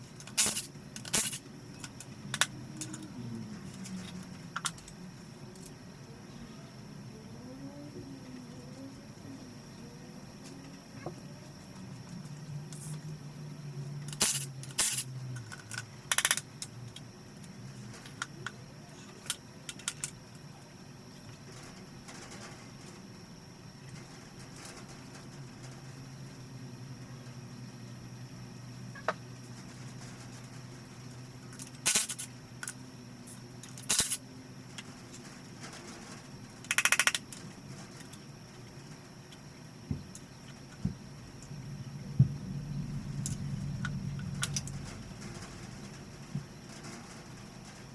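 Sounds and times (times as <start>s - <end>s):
low steady hum: 0.0s - 47.9s
ratchet clicks: 0.2s - 3.1s, 14.0s - 17.0s, 31.5s - 34.2s, 36.6s - 37.3s
sharp metallic tool noises: 0.3s - 1.4s, 14.1s - 15.1s
quick clicks: 36.7s - 37.3s.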